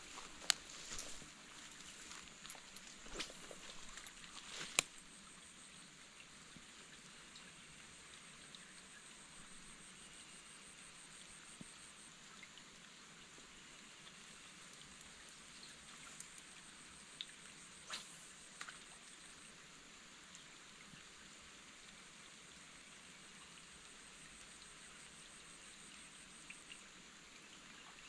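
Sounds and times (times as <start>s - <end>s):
light rain falling: 0.0s - 28.0s.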